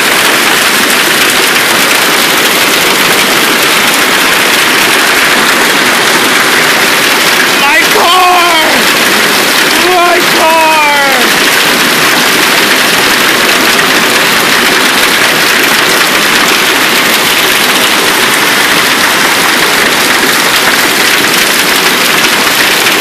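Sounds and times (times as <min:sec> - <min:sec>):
hail clattering on hard surfaces: 0:00.0 - 0:23.0.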